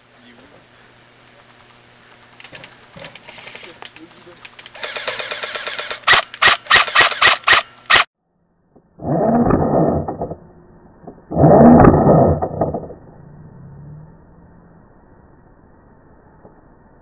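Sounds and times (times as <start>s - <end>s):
airsoft gun shots: 4.8s - 8.1s.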